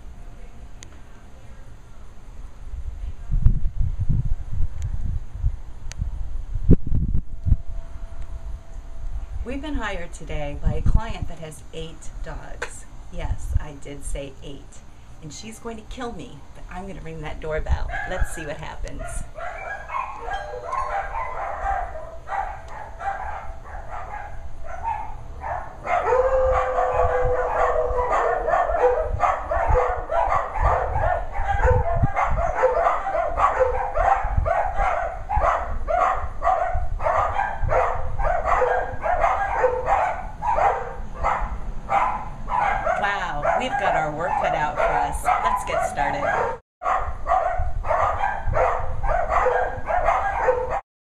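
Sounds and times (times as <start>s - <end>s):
dogs barking: 17.9s - 50.8s.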